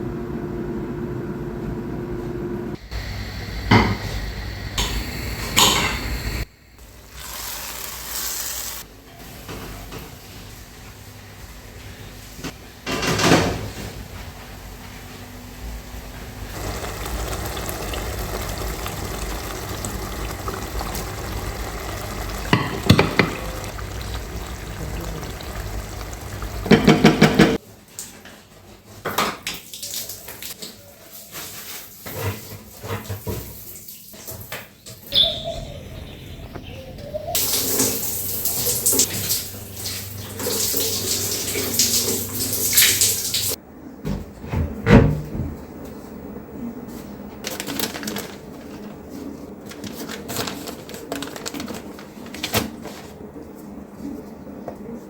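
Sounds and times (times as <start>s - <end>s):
tap running into sink: 16.7s - 27.6s
dishes and utensils clinking: 21.7s - 27.6s.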